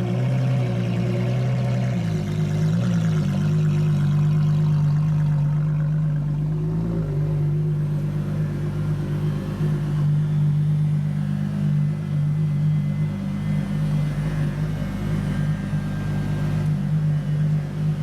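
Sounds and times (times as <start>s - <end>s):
car engine idling drone: 0.0s - 18.0s.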